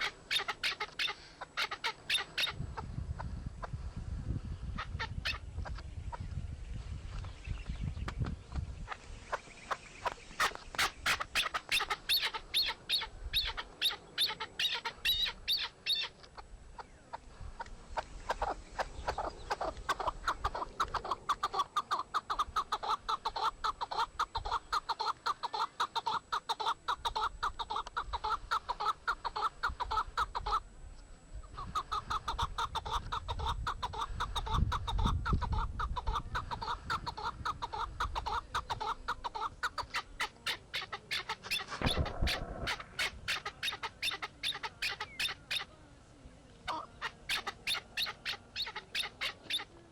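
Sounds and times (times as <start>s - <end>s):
rapid animal calls: 0.0s - 2.6s, 9.3s - 16.2s, 18.3s - 30.6s, 31.6s - 45.7s, 46.7s - 49.9s.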